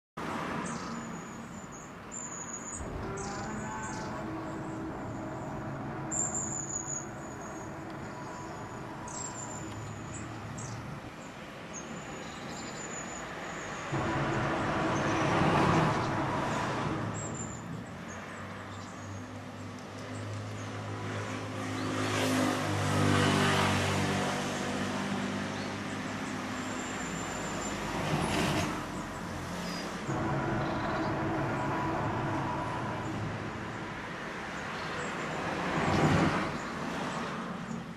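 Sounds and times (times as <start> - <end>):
birds chirping: 0.6 - 14.0
rush of noise: 2.7 - 11.3, 13.7 - 18.6, 29.4 - 36.6
deep steady tone: 2.8 - 11.3, 13.8 - 18.2, 29.9 - 35.1
low droning hum: 2.8 - 11.3, 13.9 - 18.2, 30.0 - 34.6.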